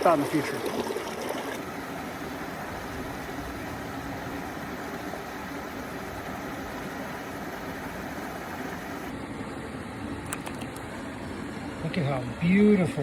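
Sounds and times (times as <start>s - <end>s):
creek water rushing over rock: 0.0s - 9.1s.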